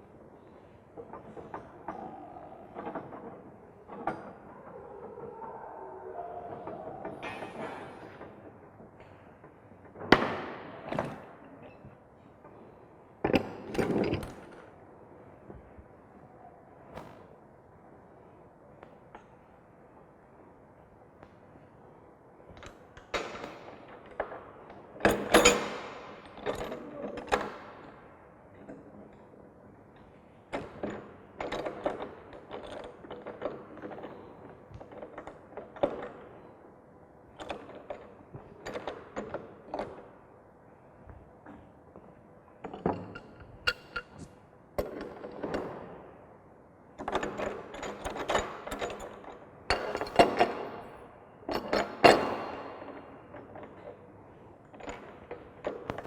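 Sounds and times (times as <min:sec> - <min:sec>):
tools and pipe fittings knocking: 0:42.7 - 0:45.5.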